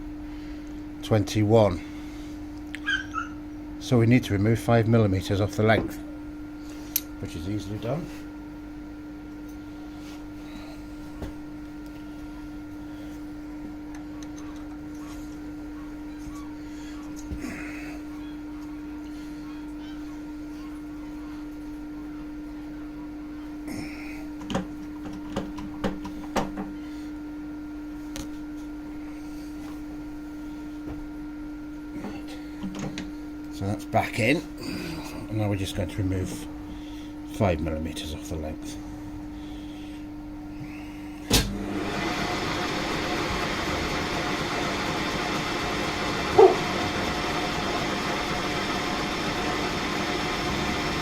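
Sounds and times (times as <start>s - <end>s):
steady low hum: 0.0s - 41.8s
lathe running: 41.5s - 51.0s.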